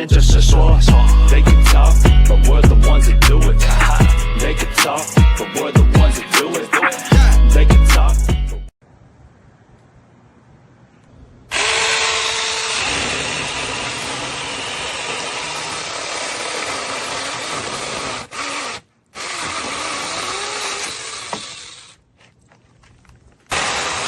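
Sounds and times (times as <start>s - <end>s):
electric chainsaw running: 11.5s - 22.0s, 23.5s - 24.0s.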